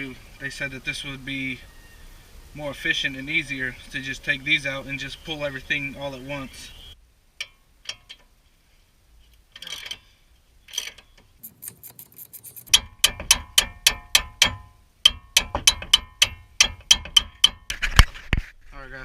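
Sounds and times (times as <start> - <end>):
rustling: 8.0 - 12.8, 17.7 - 18.8
ratchet wrench clicking: 10.7 - 17.7.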